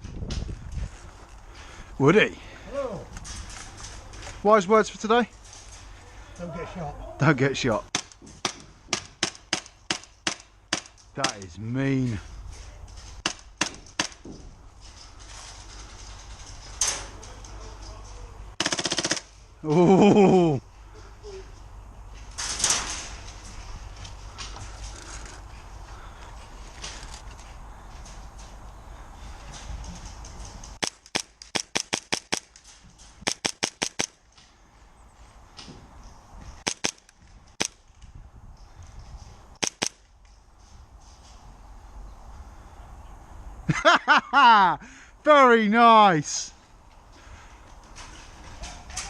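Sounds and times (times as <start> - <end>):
airsoft gun burst: 18.6 - 19.3
airsoft gun firing: 18.6 - 19.3, 30.8 - 32.5, 33.2 - 34.1, 36.6 - 37.0, 39.6 - 40.0.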